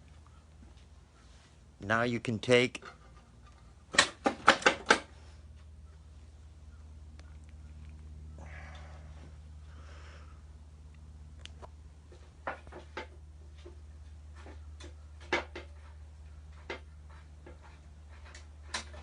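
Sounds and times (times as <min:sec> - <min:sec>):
steady low hum: 0:00.0 - 0:19.0
hand tools clicking and knocking: 0:12.1 - 0:19.0.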